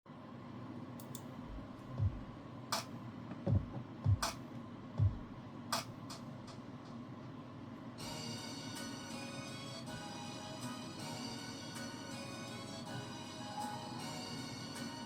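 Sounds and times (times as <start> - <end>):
sharp clicks: 1.0 - 1.3
soft low thumps: 1.5 - 2.3, 5.0 - 5.4.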